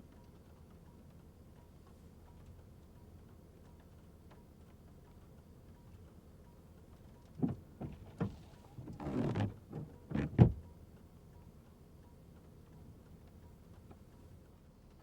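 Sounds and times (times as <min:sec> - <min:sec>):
scraping rustle: 0:07.8 - 0:10.4.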